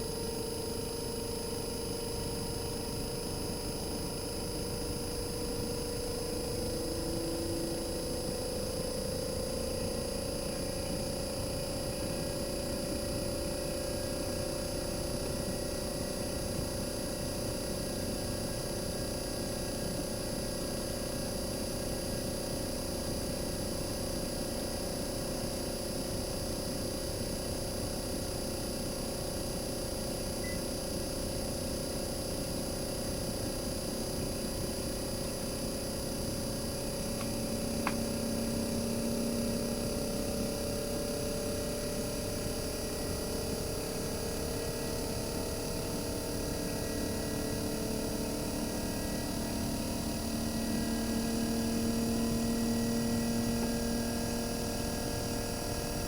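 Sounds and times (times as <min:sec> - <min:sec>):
compressor humming: 0:26.3 - 0:56.0.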